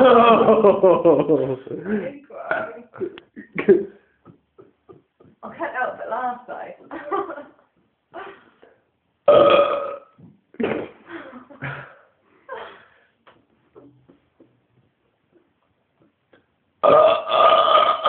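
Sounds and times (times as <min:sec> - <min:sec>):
man belching loudly: 0:02.5 - 0:03.9, 0:09.3 - 0:10.1, 0:16.8 - 0:18.0.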